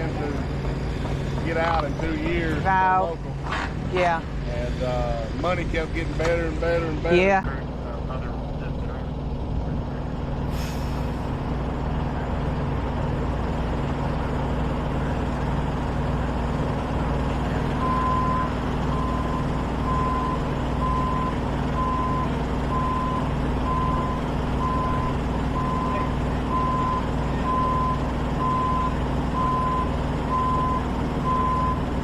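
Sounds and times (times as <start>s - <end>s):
heavy diesel engine running: 0.0s - 32.0s
short hiss: 10.5s - 11.3s
backup alarm beeping: 17.8s - 31.8s.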